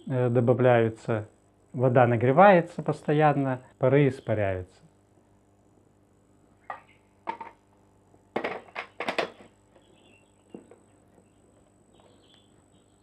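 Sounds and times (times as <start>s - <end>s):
hard objects knocking and clattering: 6.7s - 7.6s, 8.3s - 9.6s.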